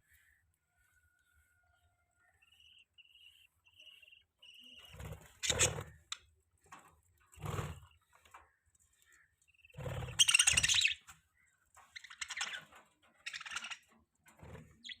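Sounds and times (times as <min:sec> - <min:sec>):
budgerigars chirping and chattering: 0:02.3 - 0:06.2, 0:09.0 - 0:14.0.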